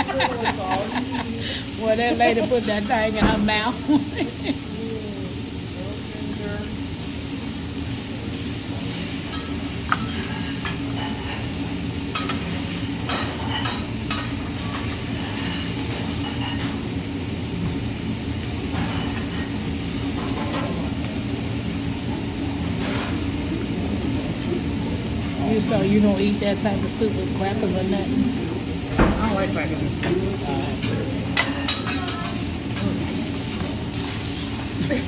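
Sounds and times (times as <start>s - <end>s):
food sizzling on a griddle: 0.0s - 35.0s
spatulas clicking on griddle: 9.3s - 11.1s, 12.1s - 15.6s, 30.8s - 34.2s.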